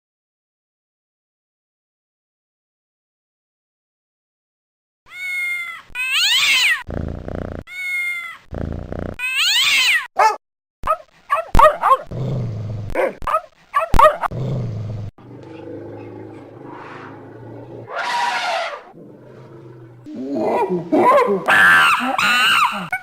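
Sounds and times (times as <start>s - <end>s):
low rasping growl: 12.1s - 13.0s, 14.2s - 22.1s
sliding animal call: 15.2s - 20.4s.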